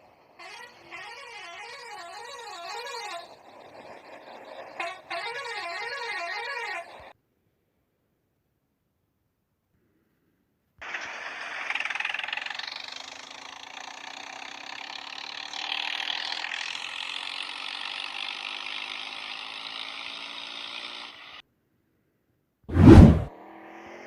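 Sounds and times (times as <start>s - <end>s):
engine running with rattle: 0.0s - 7.1s, 10.8s - 21.4s.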